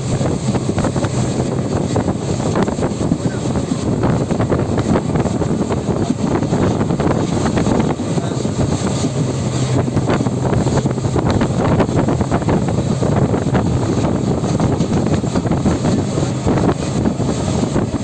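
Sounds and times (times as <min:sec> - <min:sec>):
train running noise: 0:00.0 - 0:18.0
wind buffeting microphone: 0:00.0 - 0:18.0.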